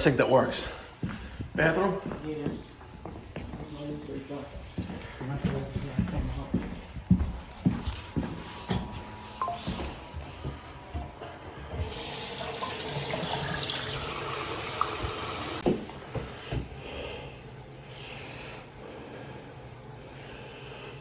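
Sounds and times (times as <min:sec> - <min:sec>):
sink faucet running: 0:11.7 - 0:15.6.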